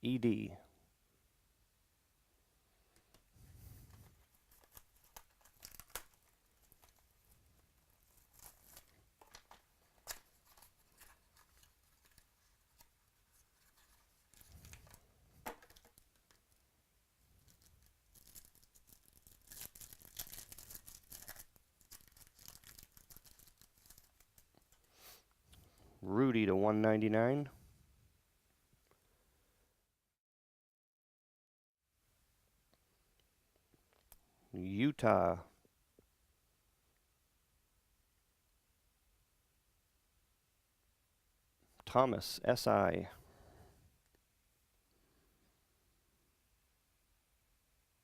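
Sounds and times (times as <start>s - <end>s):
packaging crinkling and rustling: 3.9s - 16.5s, 17.4s - 24.9s.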